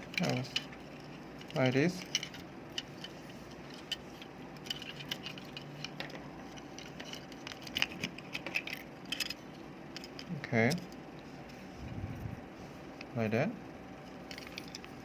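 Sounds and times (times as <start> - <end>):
small flashlight parts clicking and rattling: 0.0 - 11.0, 14.0 - 15.0.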